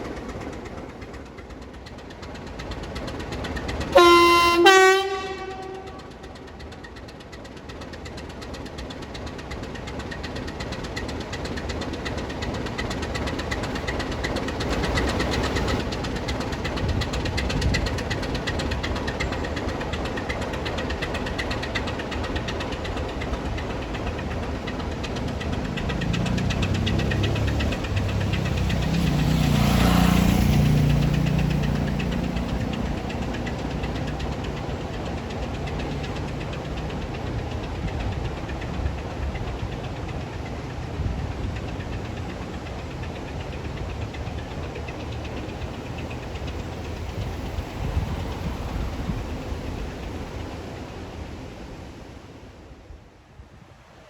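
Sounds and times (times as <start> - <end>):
locomotive diesel engine running: 0.0 - 52.5
locomotive horn blast: 3.9 - 6.4.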